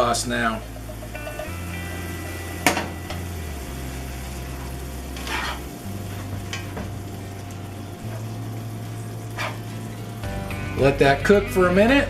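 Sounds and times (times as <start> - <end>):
meat sizzling in a frying pan: 0.0 - 11.2
utensil scraping pan: 5.2 - 6.8, 9.3 - 9.9.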